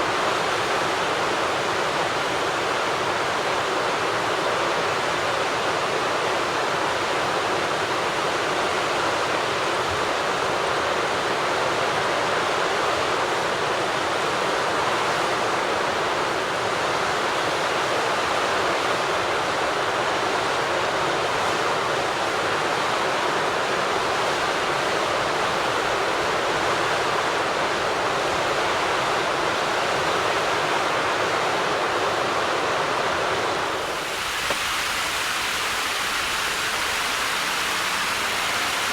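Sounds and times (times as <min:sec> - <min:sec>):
water rushing: 0:31.2 - 0:38.9.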